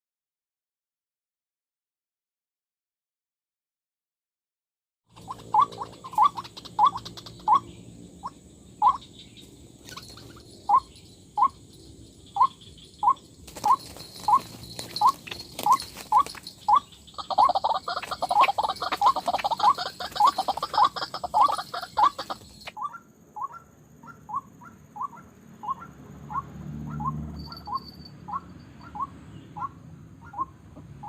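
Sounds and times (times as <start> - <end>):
waterhen calling sharp kwak notes: 12.4 - 30.5.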